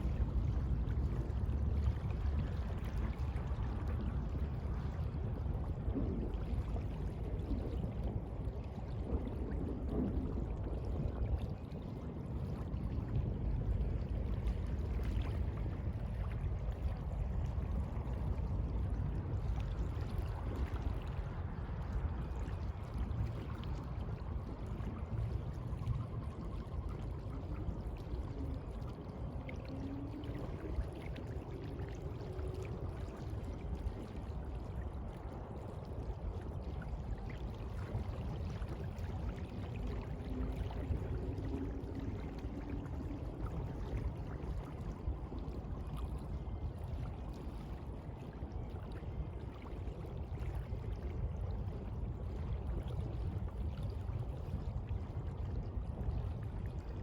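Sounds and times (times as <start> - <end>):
sea water lapping: 11.5 - 56.9.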